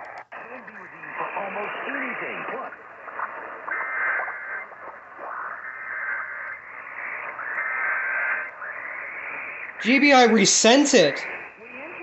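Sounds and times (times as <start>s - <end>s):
radio hiss: 0.0s - 12.0s
data tone bursts: 9.2s - 12.0s.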